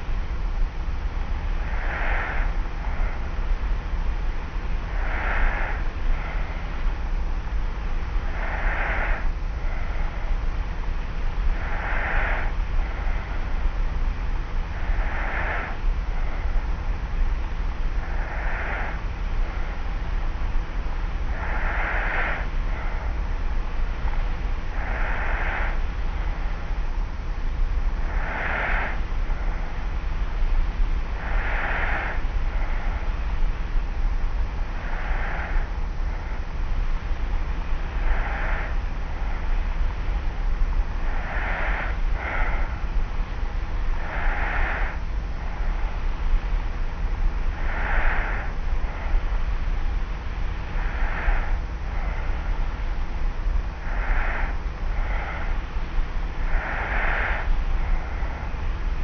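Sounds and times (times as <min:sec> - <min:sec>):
soft snoring breaths: 0:00.0 - 0:59.0
tape hiss and low hum: 0:00.0 - 0:59.0
light snoring breaths: 0:17.8 - 0:20.0, 0:34.5 - 0:58.8.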